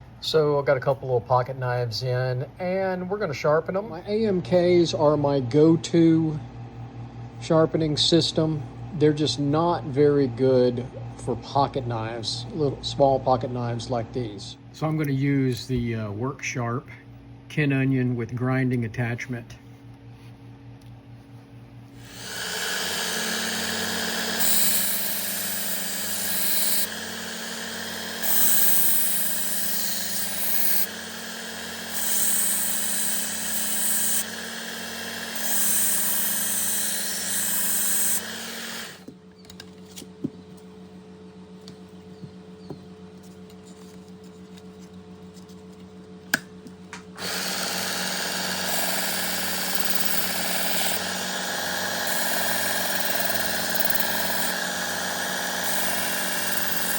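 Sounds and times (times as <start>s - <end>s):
belt sharpener motor hum: 21.9s - 39.2s, 45.6s - 56.9s.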